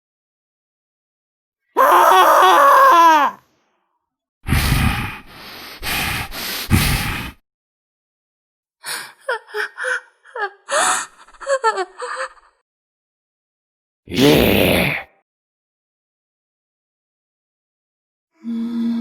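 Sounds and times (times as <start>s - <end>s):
person gasping: 4.5s - 7.4s.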